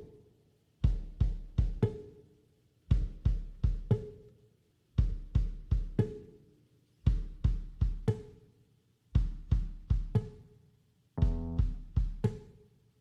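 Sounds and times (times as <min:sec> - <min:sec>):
drum kit beat: 0:05.0 - 0:06.3, 0:07.1 - 0:08.4, 0:09.2 - 0:10.4, 0:11.2 - 0:12.5.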